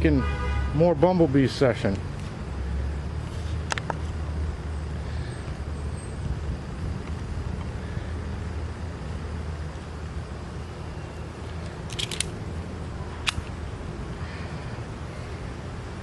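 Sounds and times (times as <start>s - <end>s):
low outdoor rumble: 0.0s - 16.0s
sharp clicks: 11.5s - 12.4s, 13.2s - 13.6s.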